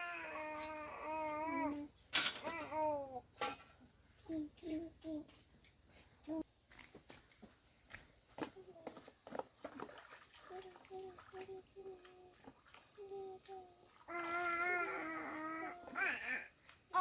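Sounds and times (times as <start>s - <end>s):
small child whimpering: 0.0s - 3.2s, 13.1s - 17.0s.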